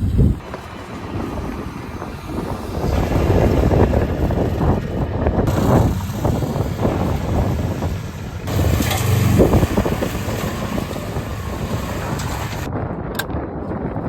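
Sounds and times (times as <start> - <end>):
car engine with rod knock: 5.5 - 12.7.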